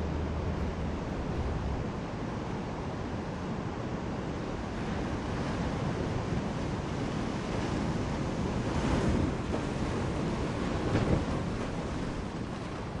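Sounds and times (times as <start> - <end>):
ocean surf breaking: 0.0 - 2.3
wind noise on microphone: 0.0 - 2.5.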